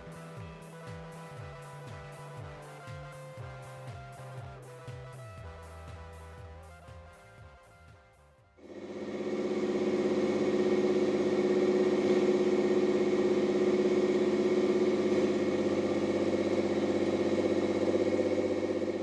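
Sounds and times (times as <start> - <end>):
car engine idling: 8.7 - 19.0.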